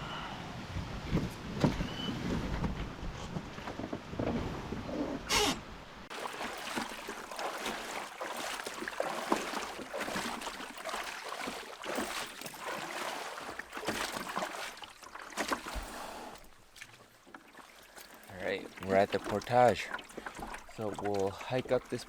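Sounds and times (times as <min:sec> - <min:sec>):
water splashing around a canoe: 0:06.0 - 0:22.0.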